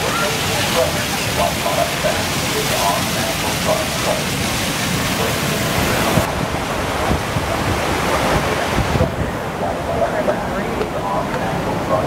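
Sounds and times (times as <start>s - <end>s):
rushing water: 0.0s - 12.0s
wind noise on microphone: 3.3s - 12.0s.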